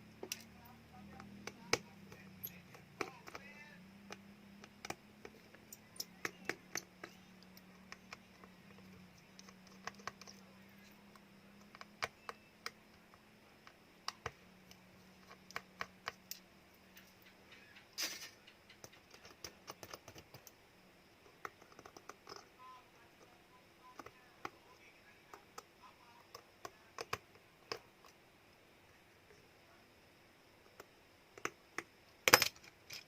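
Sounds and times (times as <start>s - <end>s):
faint low hum: 0.0s - 33.0s
tools clicking on phone parts: 0.2s - 16.4s, 17.9s - 20.5s, 21.4s - 22.4s, 30.7s - 33.0s.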